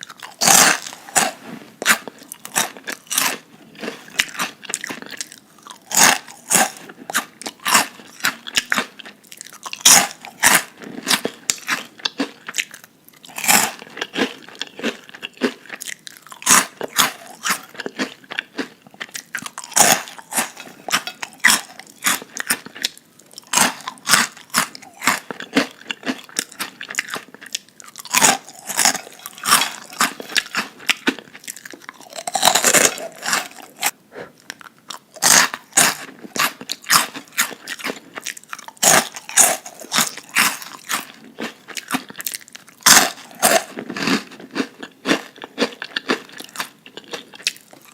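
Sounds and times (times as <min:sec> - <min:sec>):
person chewing crunchy food: 0:00.0 - 0:47.9.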